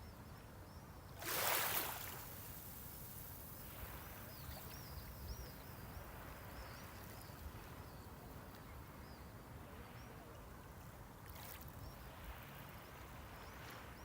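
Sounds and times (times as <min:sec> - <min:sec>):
sea water washing on shore: 0:01.2 - 0:04.9.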